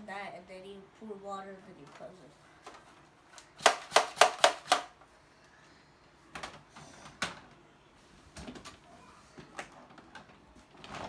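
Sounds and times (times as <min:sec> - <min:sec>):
plastic toy gun clicks: 0:03.4 - 0:05.0.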